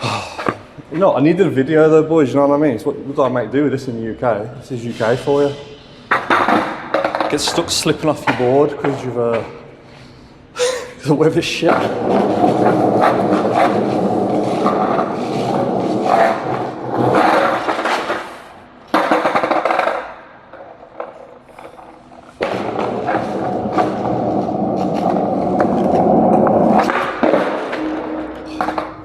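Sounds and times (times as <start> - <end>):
skateboard wheels rolling on wet pavement: 11.7 - 20.1, 20.9 - 28.8
skateboard clacking: 18.9 - 20.2.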